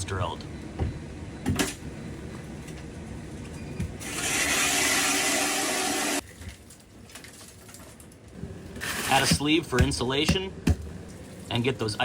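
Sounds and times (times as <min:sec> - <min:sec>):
power ice auger drilling: 0:04.0 - 0:06.2.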